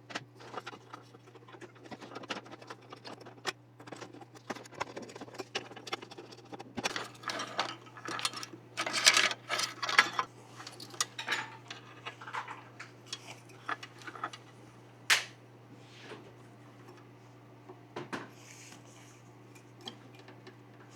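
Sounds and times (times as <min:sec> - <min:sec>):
plastic and metal parts rustling: 0:00.4 - 0:14.6
sharp click: 0:15.1 - 0:15.4.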